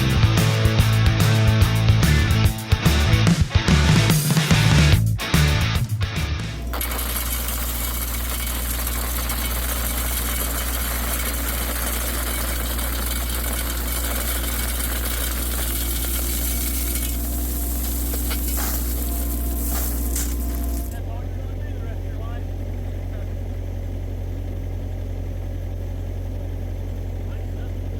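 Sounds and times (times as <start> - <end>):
diesel engine idling: 0.0 - 27.9.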